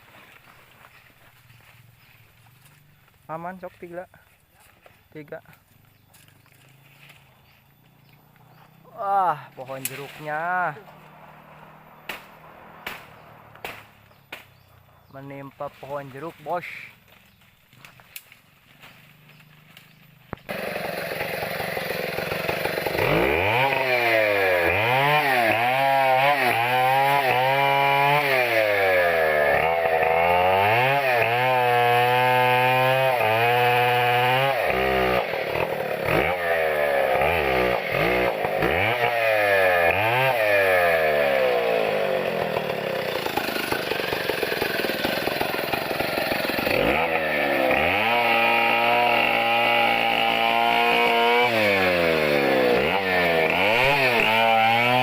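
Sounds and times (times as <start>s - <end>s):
chainsaw revving: 8.3s - 14.7s, 18.9s - 55.0s.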